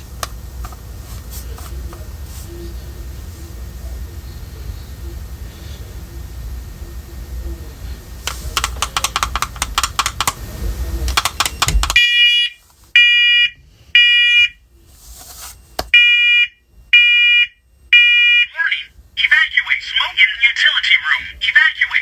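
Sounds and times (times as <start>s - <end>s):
rapid crackling clicks: 8.2s - 10.4s, 11.1s - 12.0s
smoke alarm shrill beeps: 11.4s - 14.6s, 15.6s - 18.8s.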